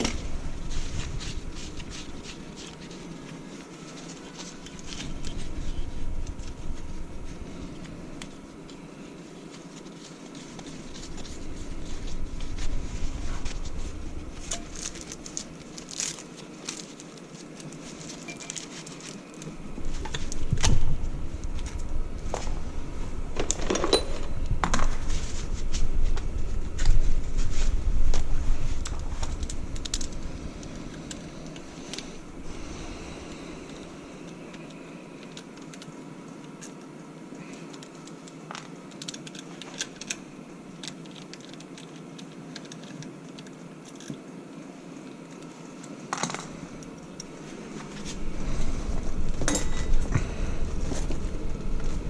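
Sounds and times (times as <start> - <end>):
tools and metal parts clinking: 18.0 - 19.2, 23.4 - 24.4, 49.5 - 50.0.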